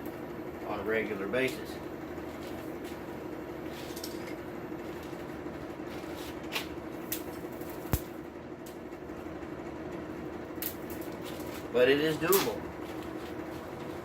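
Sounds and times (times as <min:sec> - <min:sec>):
forge fire under forced air: 0:00.0 - 0:14.0
steady hum: 0:00.0 - 0:14.0
charcoal cracking: 0:05.9 - 0:08.8, 0:10.6 - 0:13.9.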